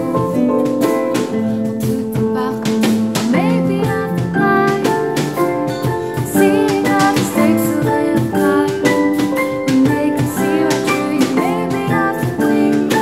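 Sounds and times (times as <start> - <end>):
acoustic pop band playing: 0.0 - 13.0.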